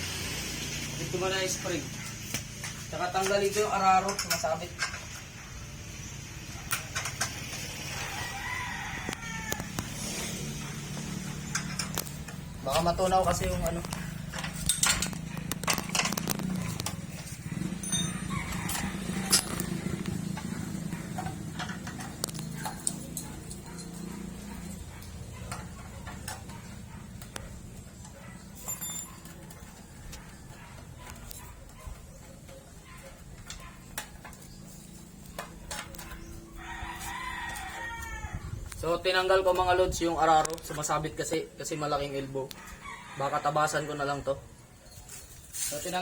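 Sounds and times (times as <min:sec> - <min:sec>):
rooster crowing: 0:07.7 - 0:10.4, 0:17.6 - 0:20.2, 0:36.5 - 0:38.5, 0:42.6 - 0:44.2
metallic clicks of hand tools: 0:13.7 - 0:17.0, 0:17.8 - 0:20.5.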